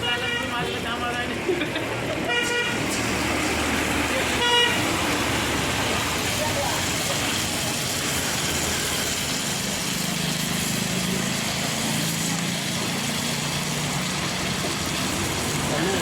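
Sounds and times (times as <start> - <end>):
small engine running: 6.4 - 16.0.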